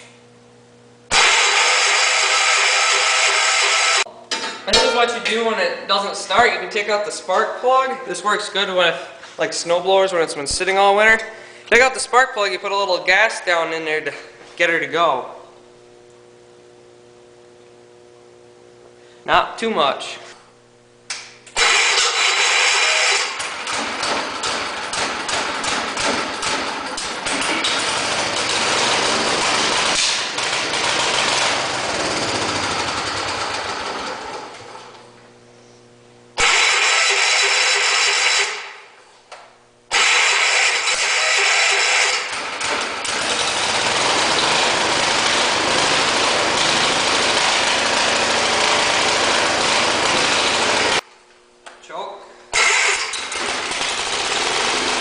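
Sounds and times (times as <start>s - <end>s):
small engine starting and running: 1.1s - 4.1s, 21.5s - 35.2s, 36.4s - 38.9s, 39.9s - 51.0s, 52.5s - 55.0s.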